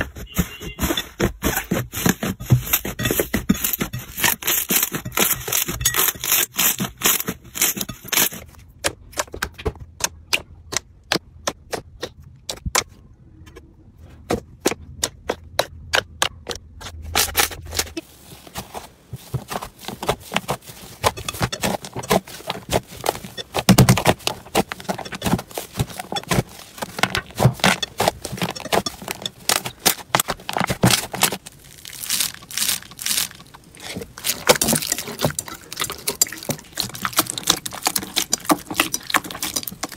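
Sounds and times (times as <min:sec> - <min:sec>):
crunchy slime crackling: 0:03.5 - 0:08.4, 0:17.1 - 0:39.9.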